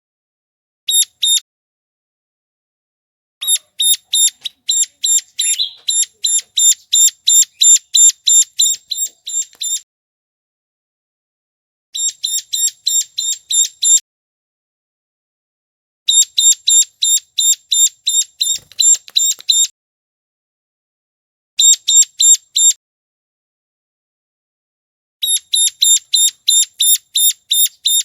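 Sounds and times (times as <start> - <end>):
bird calling rapid high chips: 0.9 - 1.4, 3.4 - 9.8, 12.0 - 14.0, 16.1 - 19.7, 21.6 - 22.8, 25.2 - 28.0.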